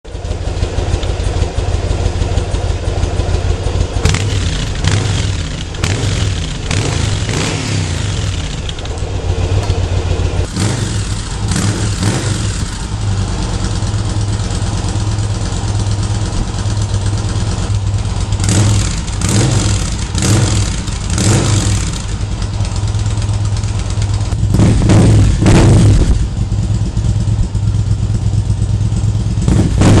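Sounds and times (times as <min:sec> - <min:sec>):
motorcycle engine idling and revving: 0:00.0 - 0:30.0.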